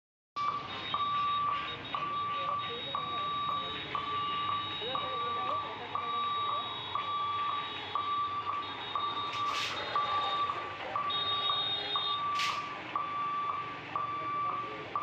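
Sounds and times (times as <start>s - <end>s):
level crossing alarm beeping: 0.4s - 15.0s.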